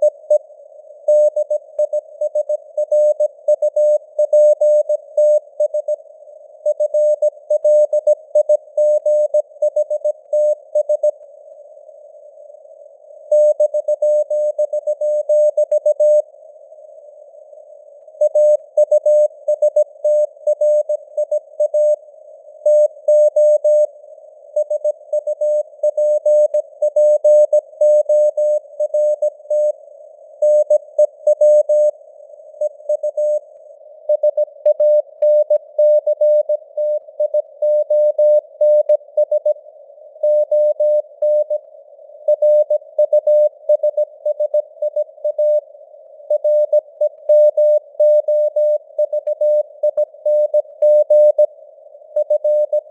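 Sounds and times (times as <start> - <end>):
morse code beeps: 30.4 - 31.9, 42.3 - 45.6, 46.3 - 51.5, 52.2 - 52.9.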